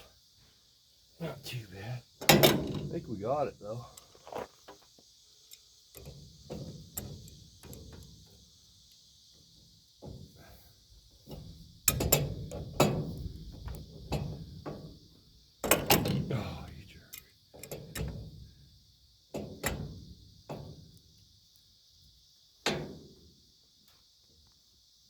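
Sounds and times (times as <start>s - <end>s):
hand tools clanking on metal: 2.2s - 3.0s.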